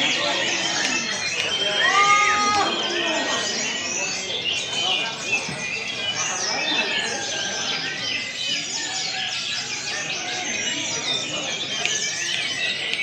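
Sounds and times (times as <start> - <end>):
many birds singing: 0.0 - 13.0
murmur of people talking: 0.0 - 13.0.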